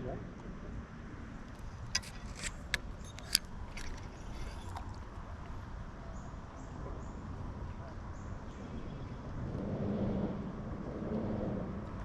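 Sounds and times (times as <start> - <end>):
low steady rumble: 0.0 - 12.0
fishing tackle clicking and rattling: 1.4 - 5.7.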